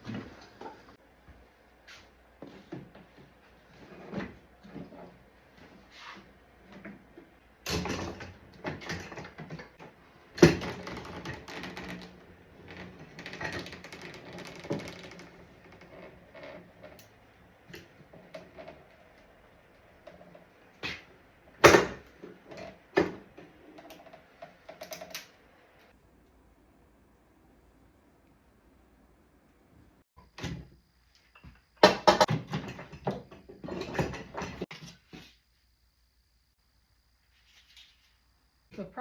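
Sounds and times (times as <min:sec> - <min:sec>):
knocks clunks and rattles: 0:31.4 - 0:34.7.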